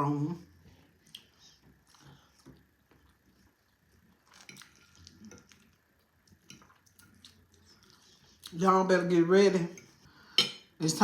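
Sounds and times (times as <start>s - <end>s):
chewing and mouth sounds: 1.0s - 8.6s.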